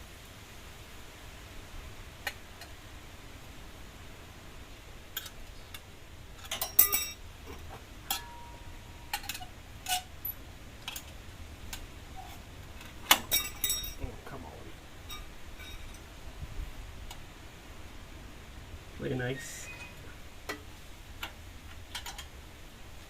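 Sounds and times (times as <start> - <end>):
metal tools clicking and clinking: 6.4 - 11.2, 12.2 - 14.0, 15.0 - 16.0, 21.9 - 22.3.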